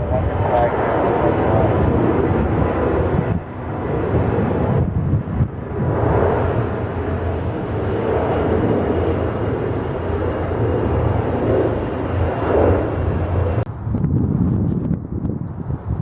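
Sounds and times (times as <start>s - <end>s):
jet engines running: 0.0s - 14.1s
faint high whine: 6.1s - 13.7s.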